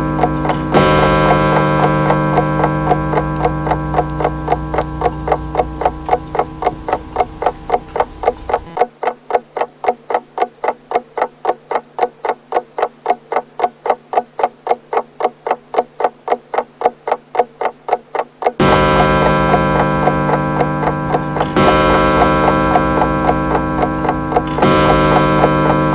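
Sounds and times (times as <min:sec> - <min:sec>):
clock gong ringing: 0:00.0 - 0:08.8, 0:18.6 - 0:25.9
pendulum clock ticking: 0:00.0 - 0:25.9.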